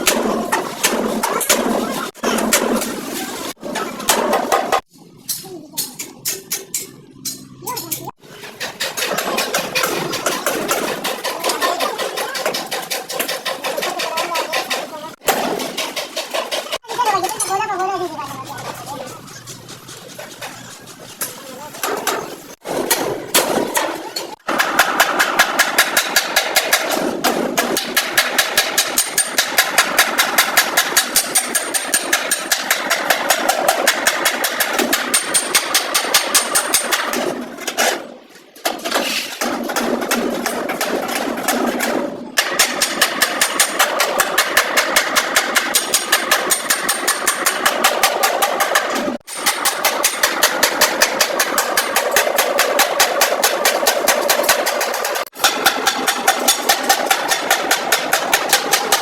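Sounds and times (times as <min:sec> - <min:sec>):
hammering on sheet metal: 0:08.5 - 0:17.7, 0:20.4 - 0:38.0, 0:38.6 - 0:59.0.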